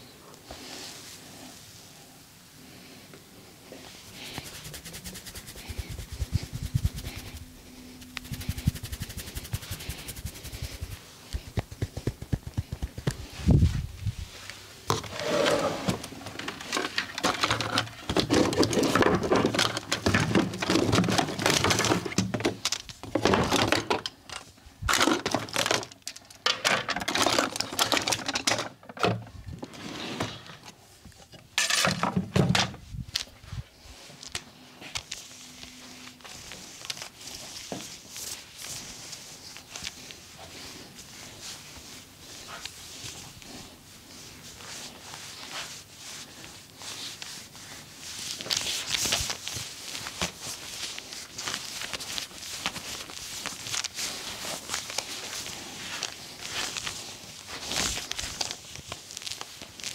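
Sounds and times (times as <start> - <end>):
hands rubbing skin: 3.8 - 14.6, 35.0 - 59.9
hands slapping and tapping skin: 8.0 - 13.4.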